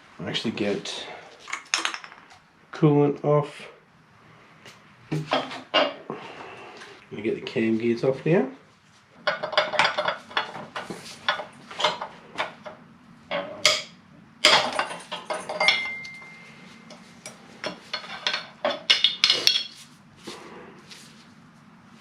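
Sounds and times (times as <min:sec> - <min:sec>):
tools clinking on metal: 0:13.3 - 0:19.8.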